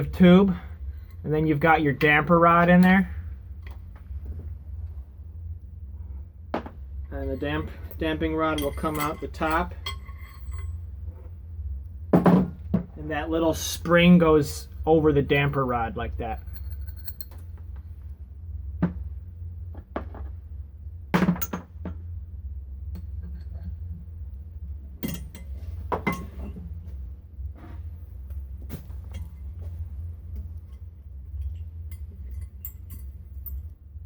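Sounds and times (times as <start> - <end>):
steady low hum: 0.0 - 34.0
metal parts clinking and knocking: 7.1 - 10.8, 15.4 - 17.6, 25.0 - 26.6, 30.6 - 33.8.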